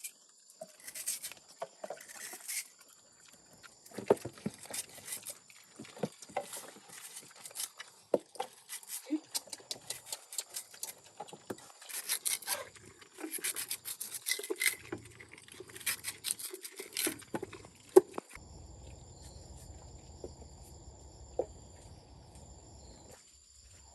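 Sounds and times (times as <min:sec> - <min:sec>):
insects chirring: 0:00.0 - 0:23.9
scraping and clicking strokes: 0:00.8 - 0:02.8, 0:08.6 - 0:18.4
low hum: 0:18.4 - 0:23.1.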